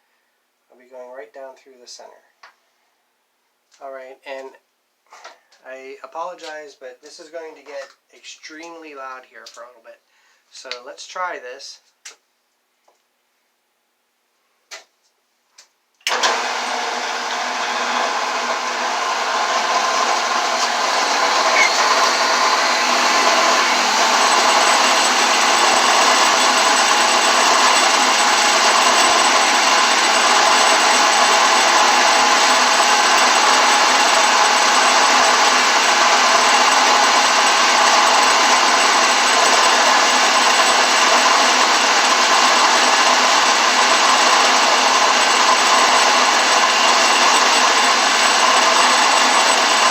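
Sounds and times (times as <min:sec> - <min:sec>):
drill press motor drilling plastic: 0:16.1 - 0:49.9.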